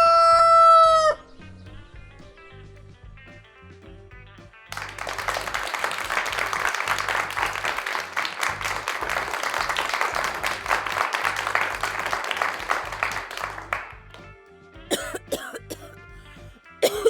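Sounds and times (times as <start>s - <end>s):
background music with bass line: 0.0s - 17.0s
crowd applauding: 4.7s - 15.9s.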